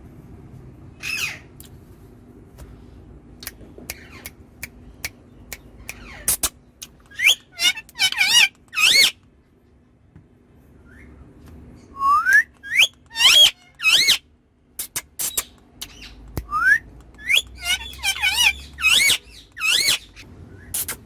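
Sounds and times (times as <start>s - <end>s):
parrot whistles and squawks: 7.1s - 9.2s, 11.9s - 14.2s, 14.8s - 21.0s.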